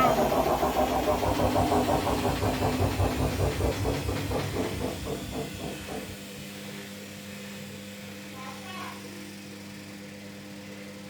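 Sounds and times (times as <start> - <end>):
washing machine drum whooshing: 0.0 - 7.2
steady low hum: 0.0 - 8.5.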